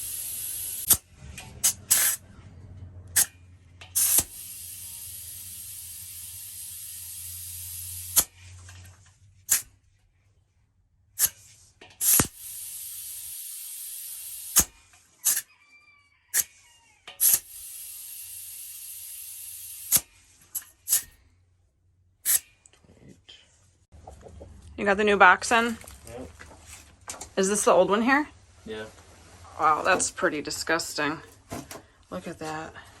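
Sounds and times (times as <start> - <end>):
air hissing through valve: 0.0 - 1.0, 1.6 - 2.2, 4.0 - 8.4.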